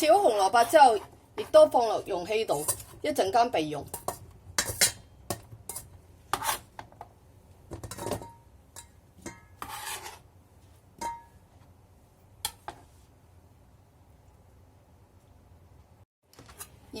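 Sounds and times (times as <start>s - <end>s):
knife and dish clinking: 3.9s - 6.6s
short scrape: 9.6s - 10.2s.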